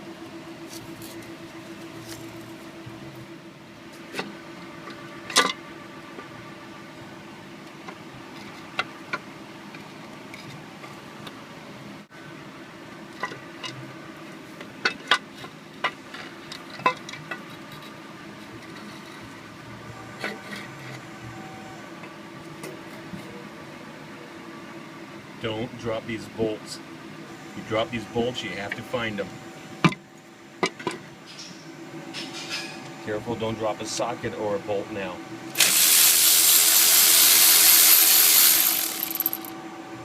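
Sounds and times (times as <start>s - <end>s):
tools clinking against metal: 37.6s - 39.5s.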